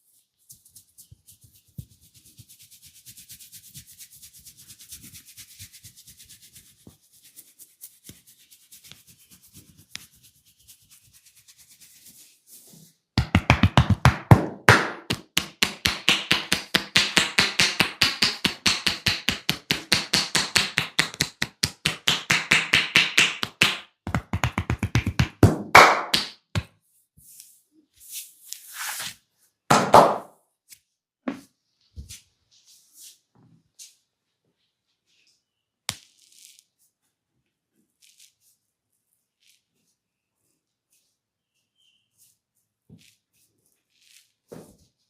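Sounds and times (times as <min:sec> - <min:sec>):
rapid hand slaps on head: 0:13.2 - 0:26.7, 0:29.7 - 0:30.3
fingers scratching hair on scalp: 0:38.0 - 0:38.5, 0:43.0 - 0:44.4.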